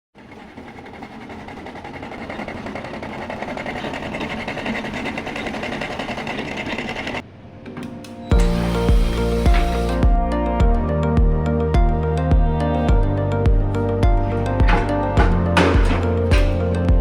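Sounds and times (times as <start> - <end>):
air conditioner fan rattling: 0.2 - 7.2, 14.6 - 16.7
music: 7.2 - 17.0.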